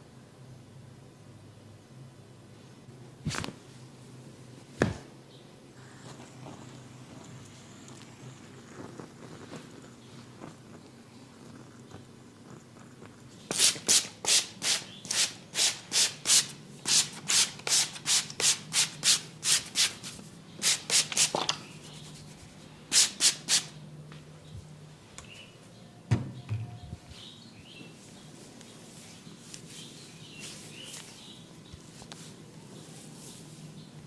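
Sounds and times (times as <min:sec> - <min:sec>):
hands rubbing briskly: 0:13.5 - 0:23.7
single knock: 0:26.1 - 0:26.7.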